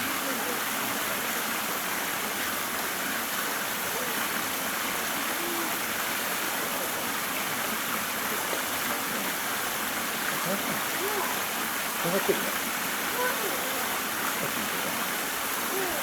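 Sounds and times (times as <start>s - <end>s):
faint voices: 3.6s - 16.0s.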